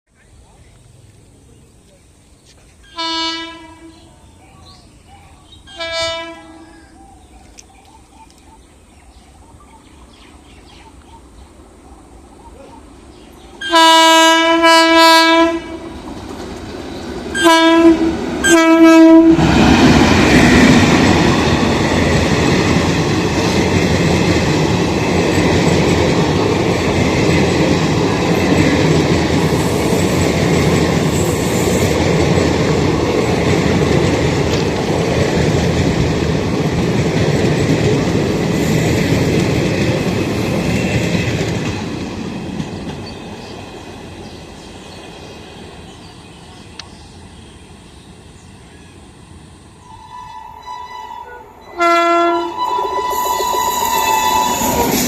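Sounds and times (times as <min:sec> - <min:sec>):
locomotive horn blasts: 0:02.9 - 0:04.1, 0:05.7 - 0:06.7, 0:13.6 - 0:15.9, 0:17.4 - 0:19.4, 0:49.9 - 0:54.9
train wheels rushing on rails: 0:09.9 - 0:50.6, 0:51.6 - 0:55.0.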